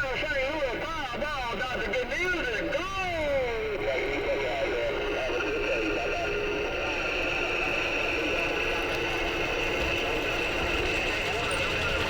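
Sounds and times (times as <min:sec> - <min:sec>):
radio static hiss: 0:03.6 - 0:08.7.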